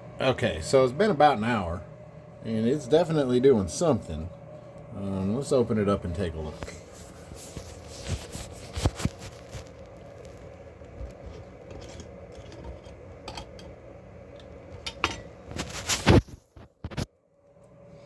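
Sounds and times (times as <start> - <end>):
jar clattering: 11.7 - 13.7.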